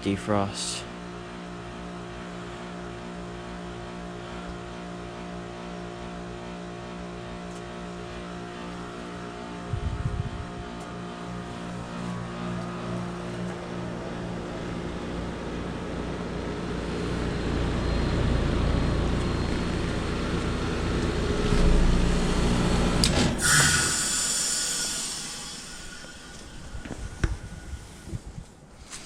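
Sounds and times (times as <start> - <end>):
heat pump compressor humming: 0.0 - 29.0
refrigerant hiss whoosh: 21.6 - 29.0.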